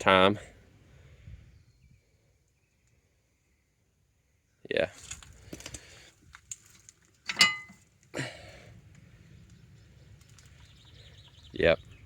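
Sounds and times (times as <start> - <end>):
ringing metal clink: 7.3 - 7.8.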